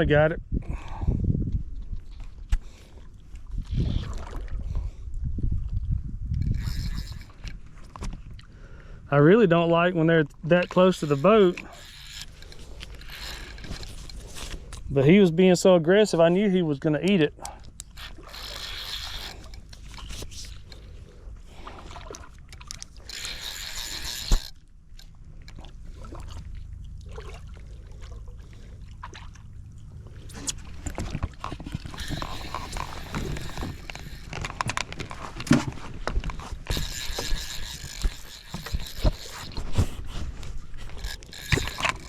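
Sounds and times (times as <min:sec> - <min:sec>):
fishing gear clicking and scuffing: 0:06.3 - 0:08.4, 0:10.3 - 0:14.9, 0:17.2 - 0:25.6, 0:30.1 - 0:42.0.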